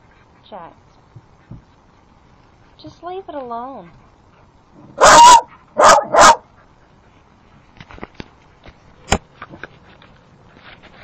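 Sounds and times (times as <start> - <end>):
dog barking: 5.0 - 6.5.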